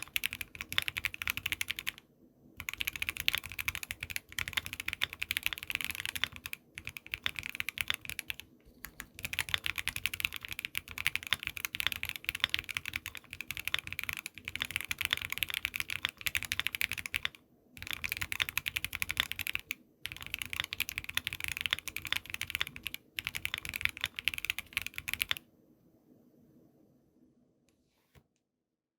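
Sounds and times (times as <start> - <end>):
fast typing on mechanical keyboard: 0.0 - 2.0, 2.6 - 25.4.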